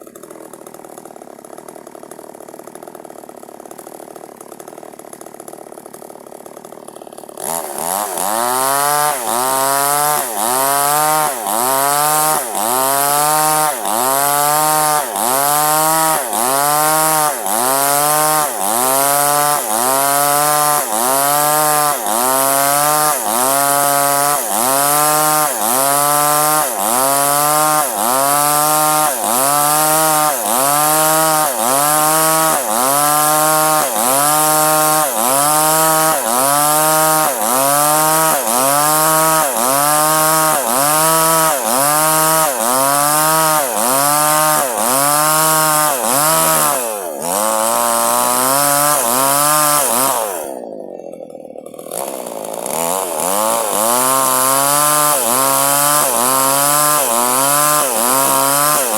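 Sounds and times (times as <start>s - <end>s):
chainsaw cutting wood: 0.0s - 58.9s.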